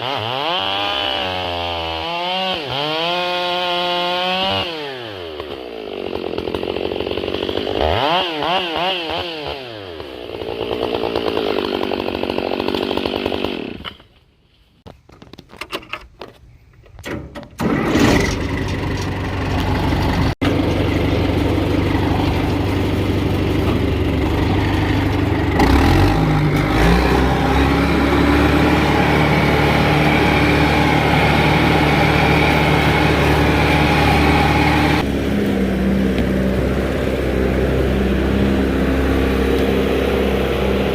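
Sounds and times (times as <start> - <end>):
chainsaw revving while cutting: 0.0 - 13.9, 20.2 - 40.9
diesel engine running: 17.6 - 40.9.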